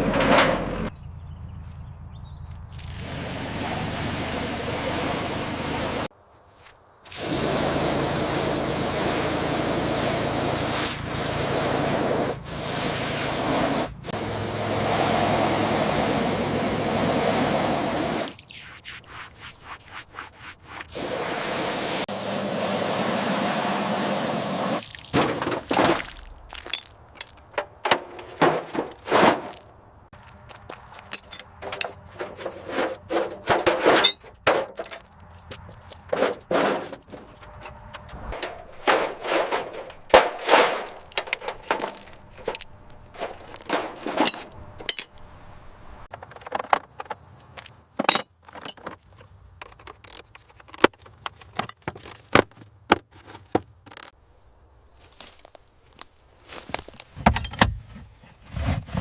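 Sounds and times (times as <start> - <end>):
metal parts knocking and clinking: 26.5 - 29.1, 31.0 - 35.2, 36.1 - 45.3, 47.9 - 52.4, 57.2 - 57.8.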